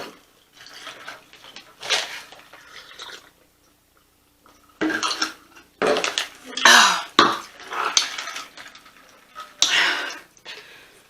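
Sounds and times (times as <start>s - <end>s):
person drinking and swallowing: 1.8s - 3.4s
noisy breaths: 9.6s - 11.0s.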